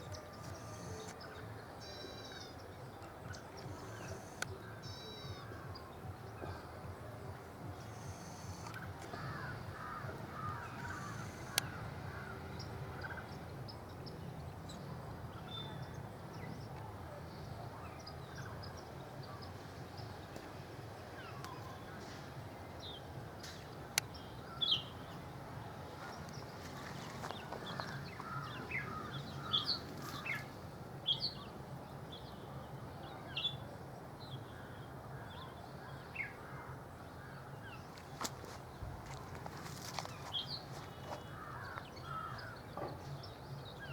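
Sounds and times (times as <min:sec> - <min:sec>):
birds chirping: 0:00.0 - 0:43.9
harsh caw-like bird calls: 0:07.8 - 0:12.4, 0:26.8 - 0:30.5, 0:41.1 - 0:42.8.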